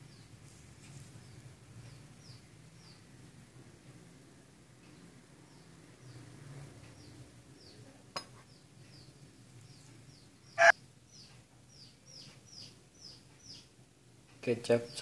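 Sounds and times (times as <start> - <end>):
bird chirping: 0.0 - 3.1, 8.5 - 13.8.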